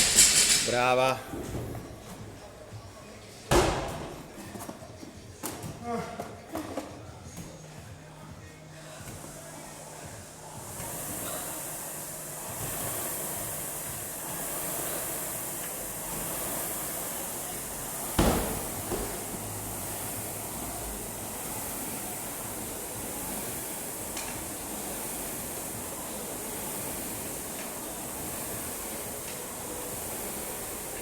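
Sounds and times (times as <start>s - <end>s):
steady background hiss: 7.6s - 31.0s.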